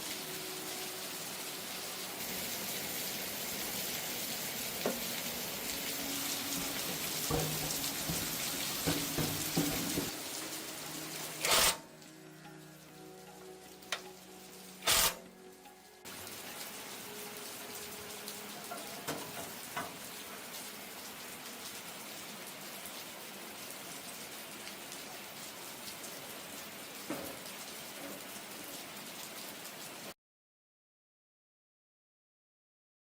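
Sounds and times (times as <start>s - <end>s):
steady hiss with ticks: 0.0s - 26.2s.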